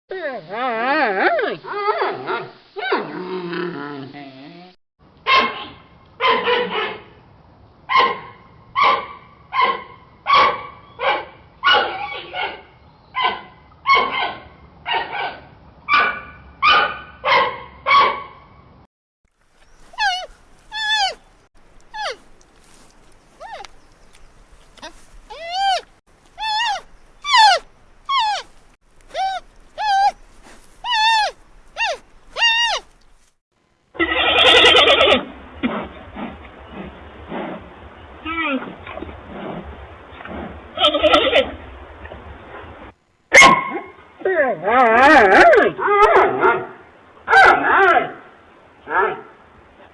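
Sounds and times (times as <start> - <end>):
panda calling: 20.0 - 21.2, 26.4 - 28.5, 29.1 - 32.9
panda chirping calls: 26.4 - 28.5.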